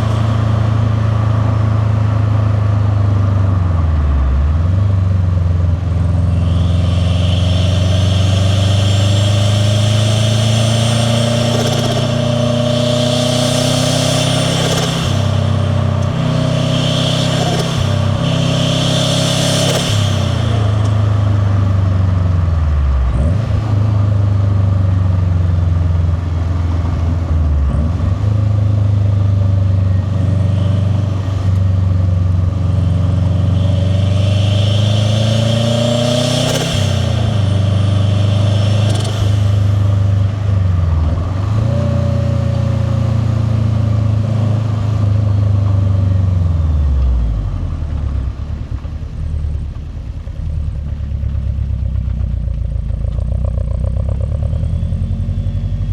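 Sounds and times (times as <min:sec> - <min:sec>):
car engine revving through gears: 0:00.0 - 0:48.9
high turbo whistle: 0:05.8 - 0:22.3, 0:32.4 - 0:40.6.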